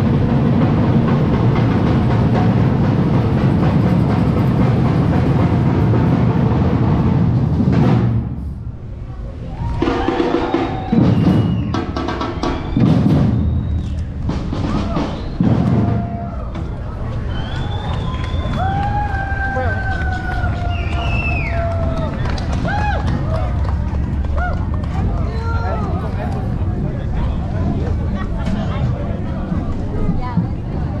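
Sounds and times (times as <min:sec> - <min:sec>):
street traffic noise: 0:00.0 - 0:31.0
music with drums and percussion: 0:09.8 - 0:17.0.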